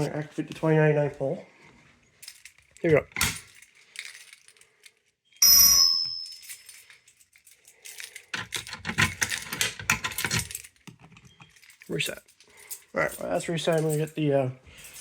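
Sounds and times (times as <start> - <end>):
key clicking and rattling: 2.2 - 5.1, 5.7 - 14.2.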